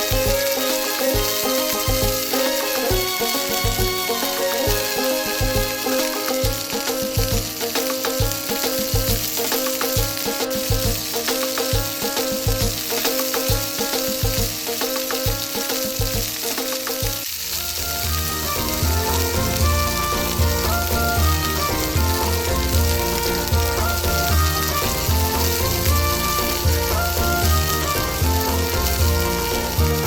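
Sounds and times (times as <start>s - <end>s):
background music with beat: 0.0s - 30.0s
food sizzling and crackling: 0.0s - 30.0s.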